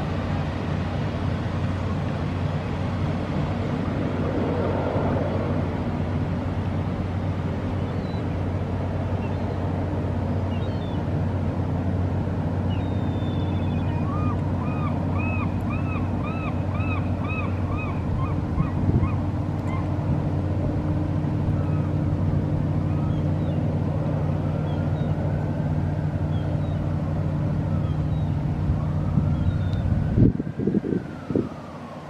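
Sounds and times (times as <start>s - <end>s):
boat engine humming: 0.0s - 32.0s
gull yelping calls: 12.8s - 19.9s.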